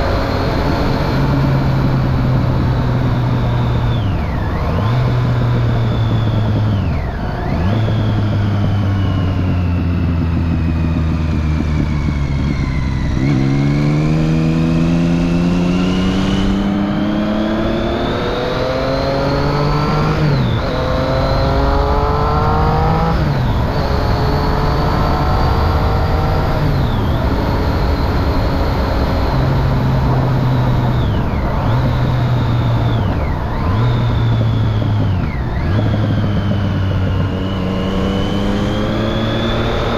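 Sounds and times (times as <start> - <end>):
gear upshifts: 0.0 - 39.9
motorcycle engine accelerating: 0.0 - 39.9.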